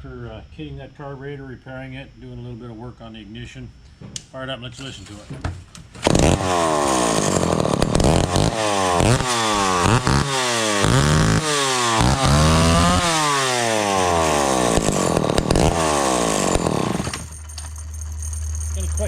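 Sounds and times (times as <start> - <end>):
chainsaw engine revving: 6.0 - 17.4.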